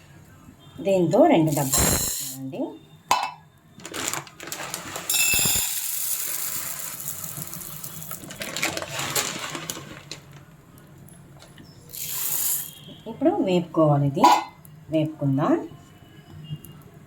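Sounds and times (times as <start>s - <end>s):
dry grains rattling in metal pan: 1.5s - 2.4s, 4.0s - 10.3s, 11.9s - 12.8s.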